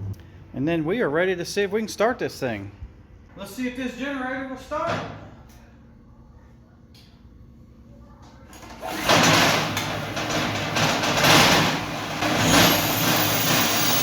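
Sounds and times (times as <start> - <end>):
generator engine starting and running: 8.5 - 14.0.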